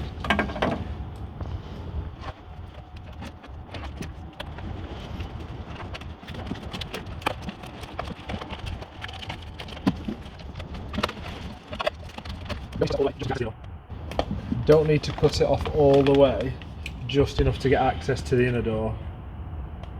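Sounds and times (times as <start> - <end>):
low steady hum: 0.0 - 19.9
plastic membrane crackling and clicking: 2.1 - 17.5.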